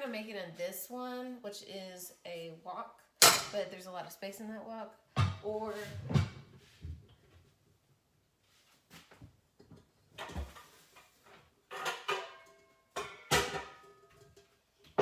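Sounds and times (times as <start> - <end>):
metal cooking pots clanking: 3.2 - 3.6, 11.7 - 15.0.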